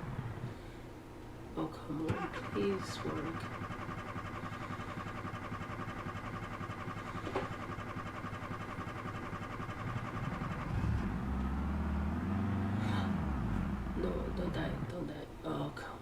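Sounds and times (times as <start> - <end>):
starter motor cranking: 1.9 - 15.0
car engine firing up: 2.0 - 15.1.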